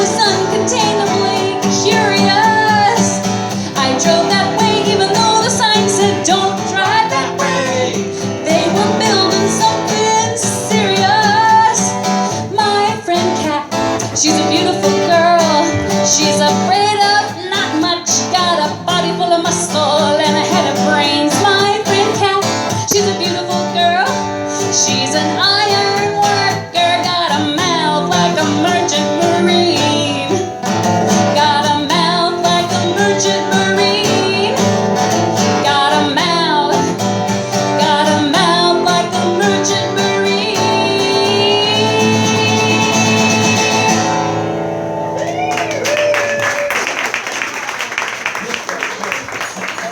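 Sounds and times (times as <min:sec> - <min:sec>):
person singing: 0:00.0 - 0:44.4
plucked acoustic guitar: 0:00.0 - 0:45.4
audience applause: 0:45.2 - 0:49.9.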